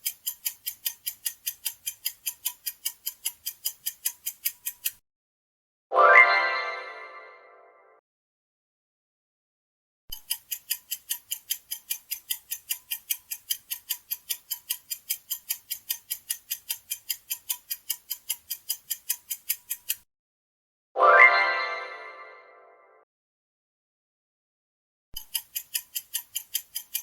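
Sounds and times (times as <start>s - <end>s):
rapid clock ticks: 0.0s - 5.0s, 10.1s - 20.0s, 25.2s - 27.0s.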